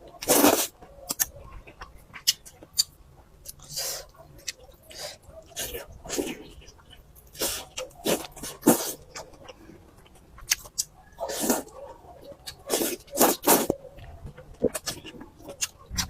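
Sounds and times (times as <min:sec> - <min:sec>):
wet noodle slurps: 0:00.2 - 0:00.7, 0:07.3 - 0:09.1, 0:11.2 - 0:11.7, 0:12.7 - 0:13.8.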